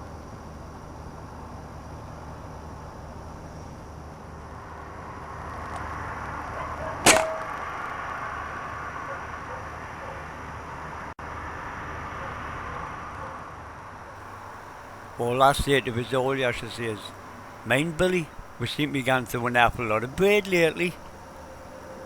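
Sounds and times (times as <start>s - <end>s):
air rifle shot: 7.0s - 7.5s
low background noise: 14.2s - 22.0s.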